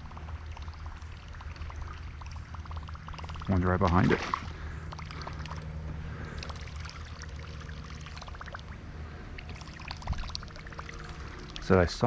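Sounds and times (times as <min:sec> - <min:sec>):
creek water trickling: 0:00.0 - 0:12.0.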